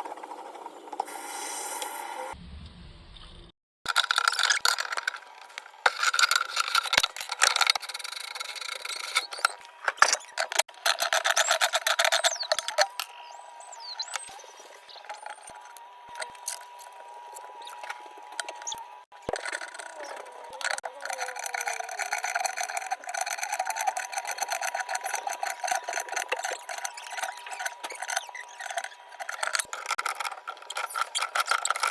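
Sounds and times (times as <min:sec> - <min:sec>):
tools scraping metal fittings: 0:03.9 - 0:05.2, 0:05.8 - 0:13.2, 0:15.0 - 0:31.9
sharp metal clicks: 0:17.6 - 0:31.9.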